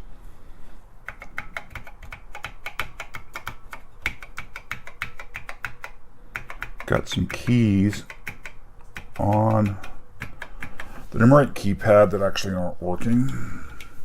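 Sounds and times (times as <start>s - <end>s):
computer keyboard keys clicking: 1.0s - 11.1s, 13.1s - 14.0s.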